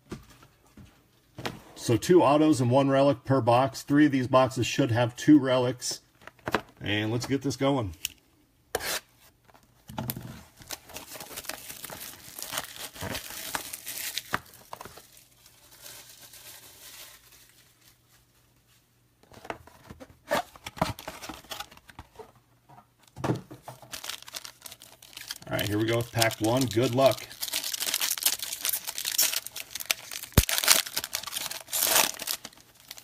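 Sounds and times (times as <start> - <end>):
plastic wrapping tearing and crinkling: 10.6 - 18.0, 23.8 - 33.0.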